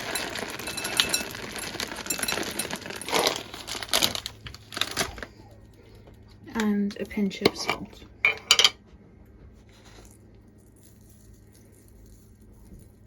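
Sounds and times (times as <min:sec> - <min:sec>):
chocolate chips clicking: 0:00.0 - 0:05.2
plastic bag crinkling: 0:00.0 - 0:05.6.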